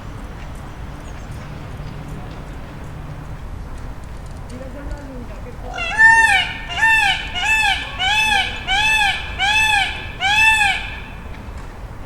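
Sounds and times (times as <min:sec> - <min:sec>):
peacock wailing calls: 0:05.7 - 0:11.6.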